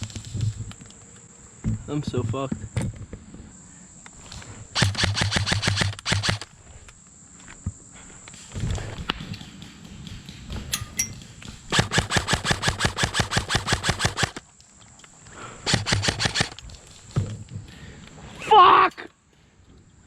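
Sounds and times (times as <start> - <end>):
airsoft rifle firing bursts: 4.8 - 6.5, 11.6 - 14.4, 15.7 - 16.7.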